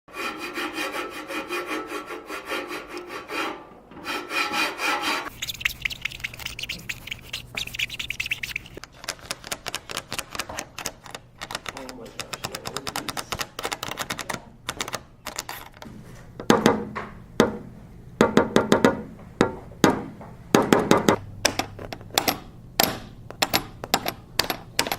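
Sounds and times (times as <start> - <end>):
rhythmic rasping strokes: 0.1 - 8.8.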